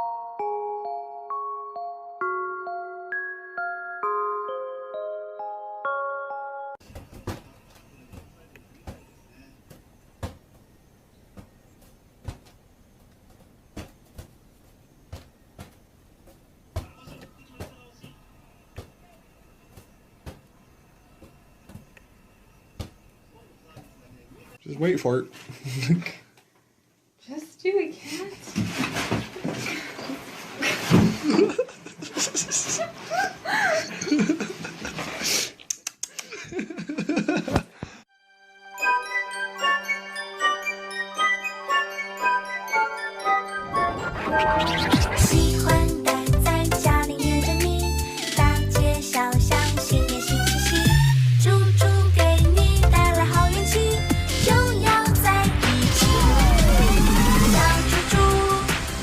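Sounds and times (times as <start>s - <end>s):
people laughing and giggling: 30.6s - 35.2s, 36.2s - 38.0s.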